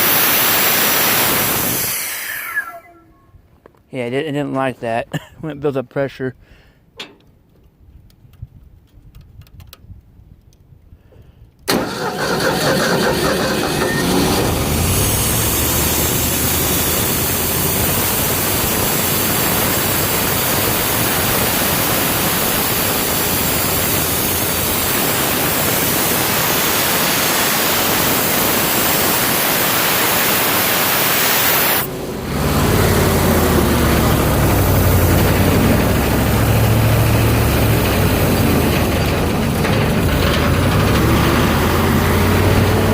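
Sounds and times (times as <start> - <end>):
engine driving an air compressor: 0.0 - 2.9, 11.7 - 42.9.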